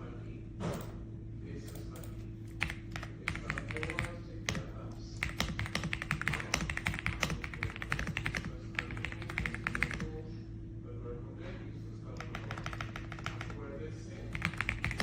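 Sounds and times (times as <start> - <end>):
mechanical keyboard typing: 2.6 - 10.1, 12.2 - 13.6, 14.3 - 15.0.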